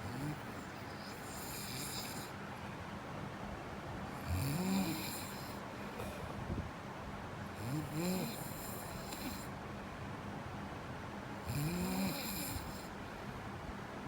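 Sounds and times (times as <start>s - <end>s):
snoring: 0.0s - 2.3s, 4.2s - 6.2s, 7.6s - 9.5s, 11.4s - 13.0s.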